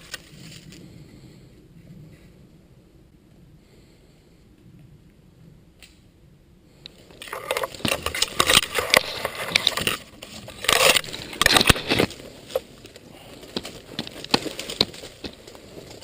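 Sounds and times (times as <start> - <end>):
clothing and gear rustling: 7.0 - 16.0.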